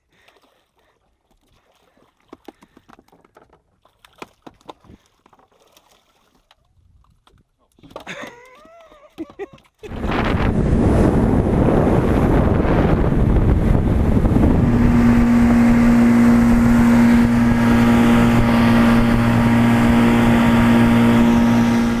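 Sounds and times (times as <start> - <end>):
boat engine hum: 8.2 - 22.0
wind buffeting microphone: 9.9 - 22.0.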